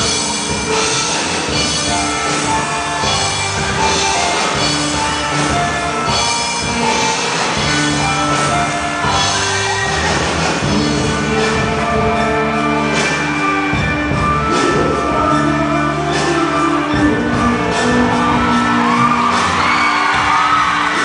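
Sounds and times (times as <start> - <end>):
drum kit: 0.0 - 21.0
guitar melody: 0.0 - 21.0.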